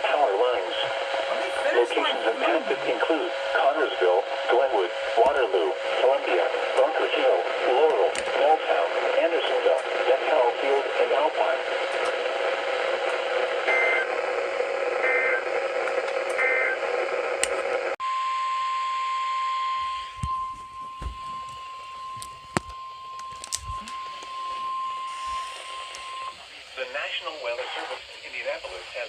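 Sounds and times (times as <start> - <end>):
radio static: 0.0 - 18.0, 23.4 - 29.0
steady warning alarm tone: 0.1 - 7.9, 12.7 - 15.6, 16.3 - 16.8, 18.0 - 29.0
two-tone data bleeps: 13.7 - 14.1, 16.4 - 16.8.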